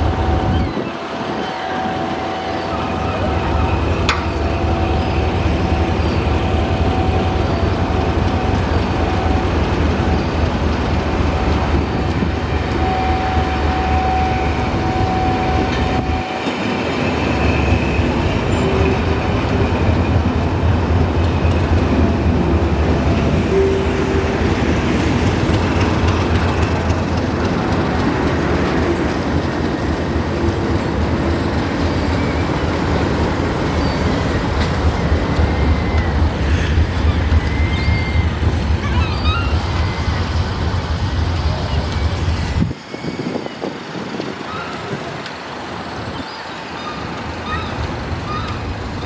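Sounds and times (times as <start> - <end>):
diesel locomotive engine drone: 0.0 - 49.0
train rumbling: 0.0 - 49.0.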